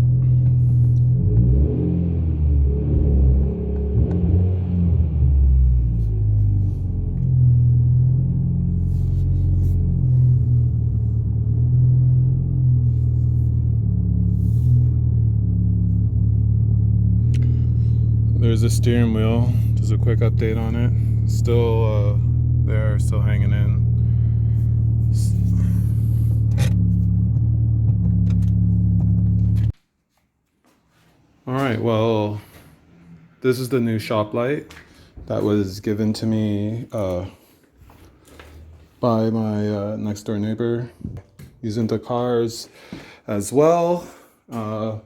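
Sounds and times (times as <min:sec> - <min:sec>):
car engine idling: 0:00.0 - 0:29.8.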